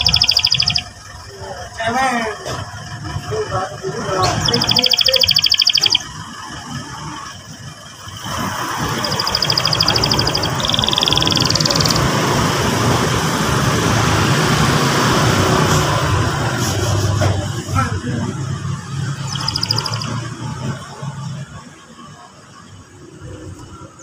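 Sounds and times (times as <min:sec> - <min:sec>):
canary trilling: 0:00.0 - 0:01.2, 0:04.1 - 0:07.3, 0:08.0 - 0:12.7, 0:18.8 - 0:20.4.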